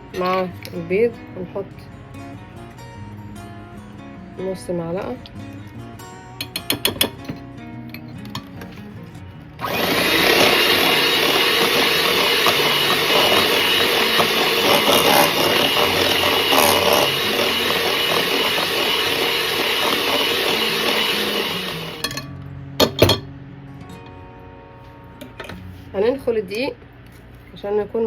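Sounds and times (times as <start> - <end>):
electric hand mixer running: 9.6 - 22.1.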